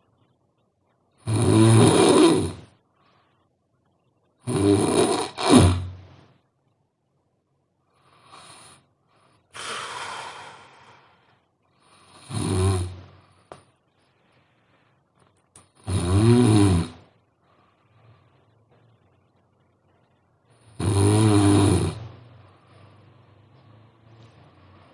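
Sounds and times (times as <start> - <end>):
person snoring loudly: 1.2 - 2.7, 4.4 - 5.9, 9.6 - 11.0, 12.0 - 13.0, 15.8 - 17.0, 20.6 - 22.1
soft breaths: 2.7 - 4.2, 7.7 - 12.3, 12.9 - 15.5, 17.1 - 20.8, 22.0 - 24.9.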